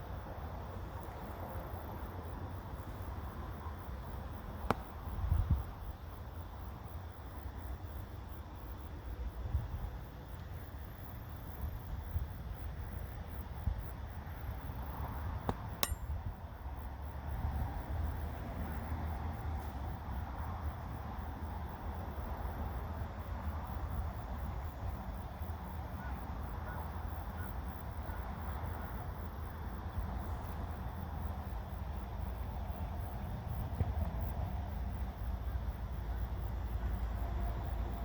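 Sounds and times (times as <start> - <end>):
sharp click: 15.5 - 16.1.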